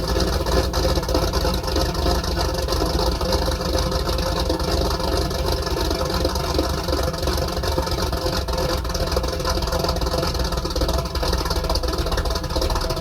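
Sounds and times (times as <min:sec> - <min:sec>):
car engine idling loudly: 0:00.0 - 0:13.0.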